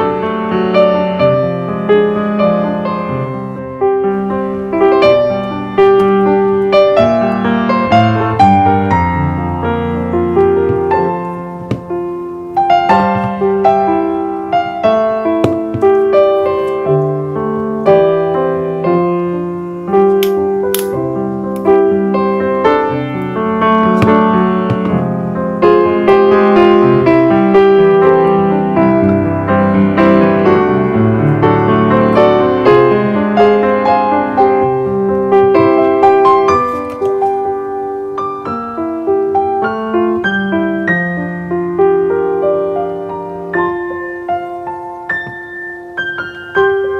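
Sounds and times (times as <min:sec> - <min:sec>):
gentle piano melody: 0:00.0 - 0:46.9.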